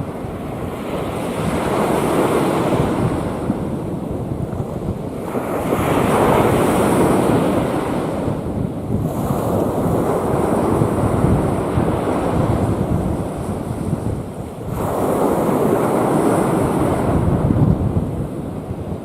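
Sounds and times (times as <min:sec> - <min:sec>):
sea waves breaking: 0:00.0 - 0:19.0.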